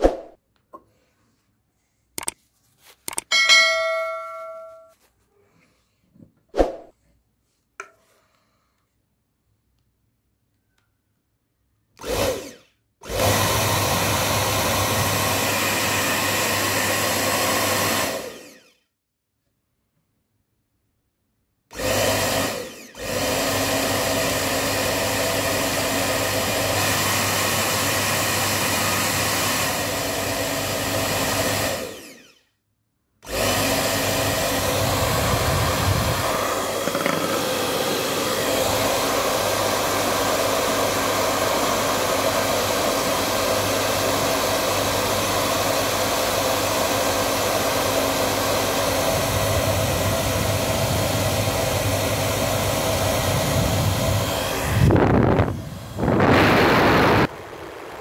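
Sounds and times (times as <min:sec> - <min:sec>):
hair dryer running: 0:12.0 - 0:18.8, 0:21.7 - 0:32.4, 0:33.2 - 0:58.0.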